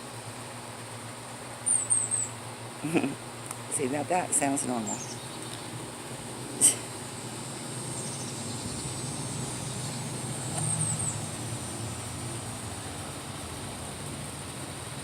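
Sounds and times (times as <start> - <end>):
high bird chirps: 1.7 - 2.4, 7.9 - 11.3
traffic engine rumble: 2.9 - 15.0.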